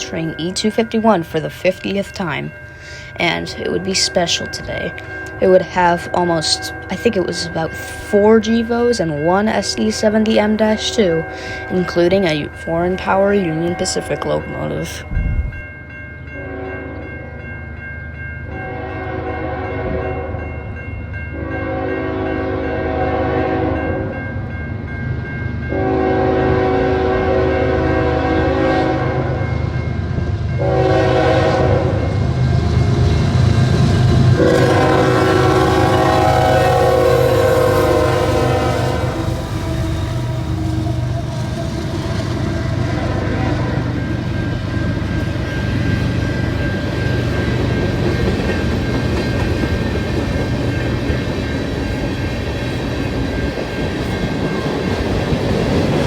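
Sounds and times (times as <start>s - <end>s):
diesel train rumble: 0.0s - 56.0s
locomotive air horn blasts: 18.6s - 20.3s, 21.4s - 23.9s, 25.7s - 29.4s, 30.6s - 32.1s, 34.4s - 41.5s, 42.5s - 43.9s.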